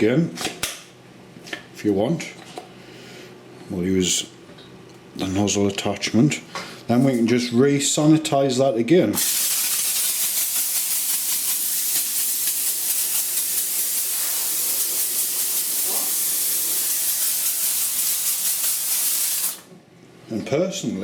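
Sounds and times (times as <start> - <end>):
steam cleaner hissing: 9.2 - 19.7.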